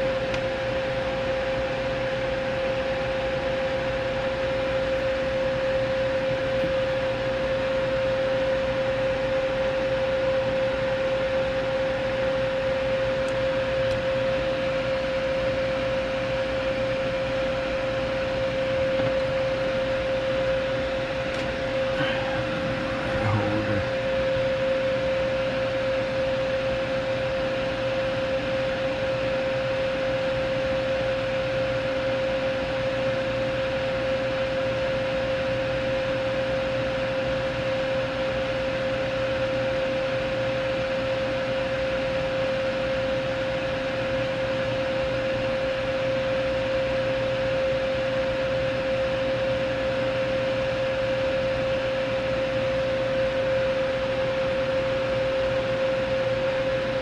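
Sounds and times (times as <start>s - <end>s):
fan whirring: 13.1s - 15.0s, 17.2s - 26.8s
mid-pitched hum: 16.7s - 26.5s.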